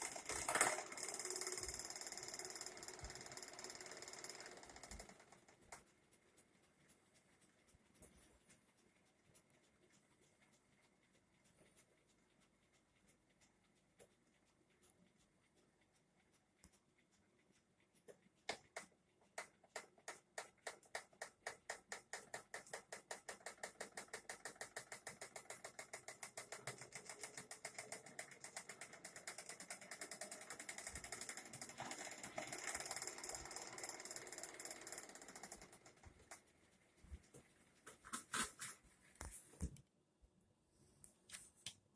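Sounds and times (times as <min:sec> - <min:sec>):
rapid clicking knock in wheel: 0:00.0 - 0:05.8, 0:18.5 - 0:36.4
electric hub motor spinning: 0:00.0 - 0:06.0, 0:23.5 - 0:36.5.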